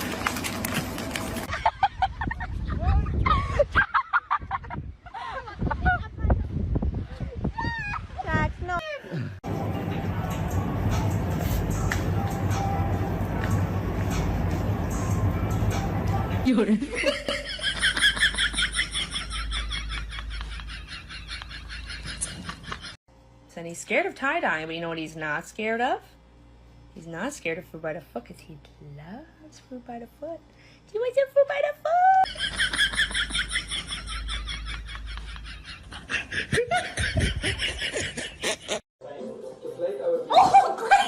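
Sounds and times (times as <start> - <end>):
person snickering: 35.2 - 38.8.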